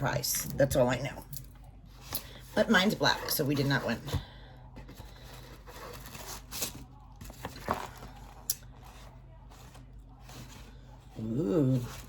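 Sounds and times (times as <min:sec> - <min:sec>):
tissue paper rustling and crinkling: 0:04.9 - 0:10.7.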